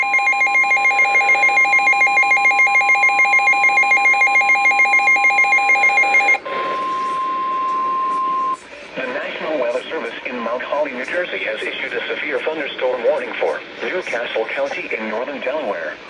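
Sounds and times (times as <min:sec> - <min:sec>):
rapid pulsing beep: 0:00.0 - 0:08.6
steady warning alarm tone: 0:00.0 - 0:08.7
radio hiss: 0:06.4 - 0:16.0.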